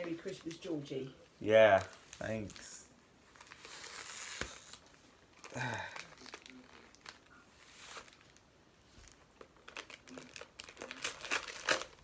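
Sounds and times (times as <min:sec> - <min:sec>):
paper rustling and crinkling: 0:03.3 - 0:12.0.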